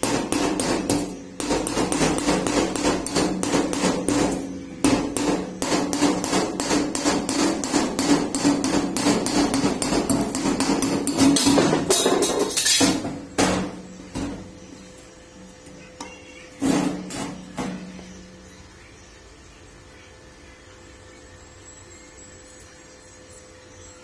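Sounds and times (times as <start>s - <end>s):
hammer blows on metal: 0.0s - 14.7s.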